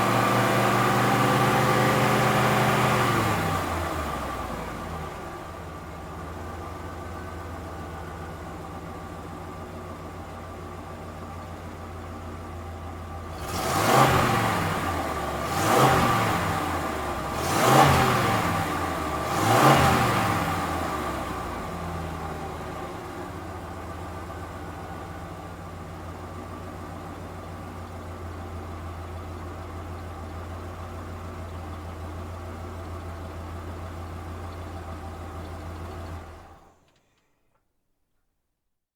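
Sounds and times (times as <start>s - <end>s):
truck engine revving: 0.0s - 5.4s, 13.3s - 22.8s
truck engine idling: 2.8s - 13.4s, 20.4s - 37.0s.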